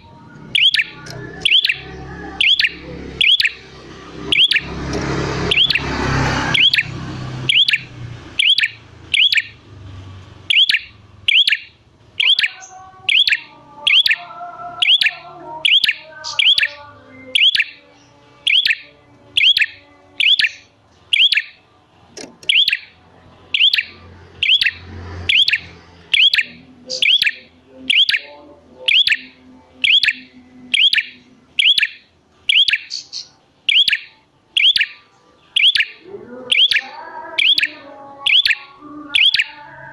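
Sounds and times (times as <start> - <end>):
bird calling sharp high notes: 0.0 - 3.6, 4.2 - 4.8, 5.4 - 9.6, 10.4 - 21.6, 22.4 - 28.3, 28.9 - 35.0, 35.6 - 39.6
faint lower bird chirps: 0.0 - 3.6, 4.3 - 4.7, 7.5 - 9.6, 10.5 - 14.2, 14.8 - 17.8, 19.4 - 21.6, 22.5 - 22.9, 23.5 - 28.3, 28.9 - 39.6.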